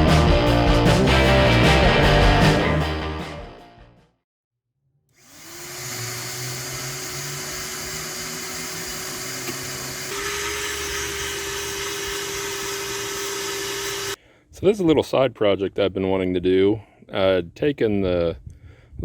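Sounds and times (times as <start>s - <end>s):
small electric motor whine: 5.2s - 14.2s.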